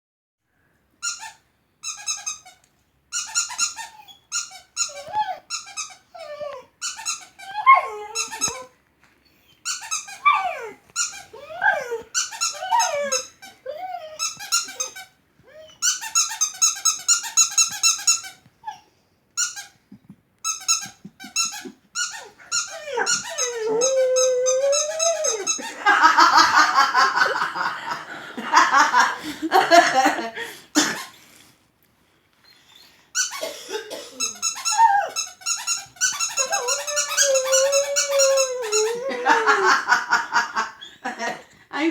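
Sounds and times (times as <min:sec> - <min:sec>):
dog whining and howling: 0:03.8 - 0:08.8, 0:09.7 - 0:16.1, 0:21.5 - 0:26.6, 0:34.2 - 0:41.0.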